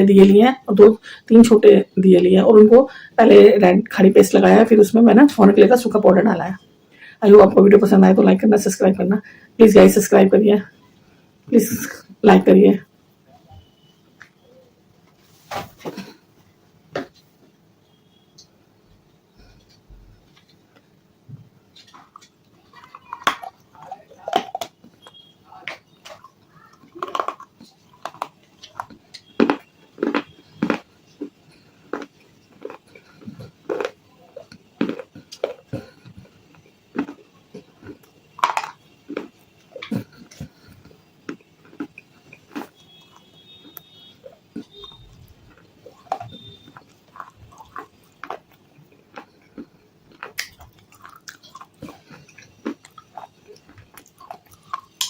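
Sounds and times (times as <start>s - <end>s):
quiet chewing: 19.3s - 55.0s
person crunching baked clay: 21.8s - 55.0s.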